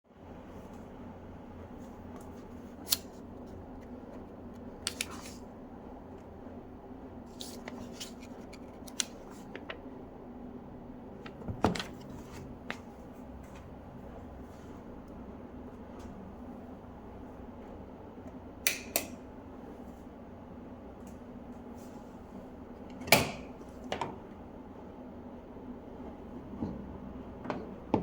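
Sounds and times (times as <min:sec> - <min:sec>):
steady low hum: 0:00.1 - 0:28.0.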